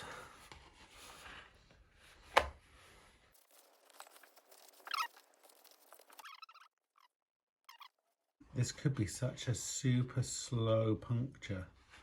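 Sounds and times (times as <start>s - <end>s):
rustling handling noises: 3.3s - 6.3s.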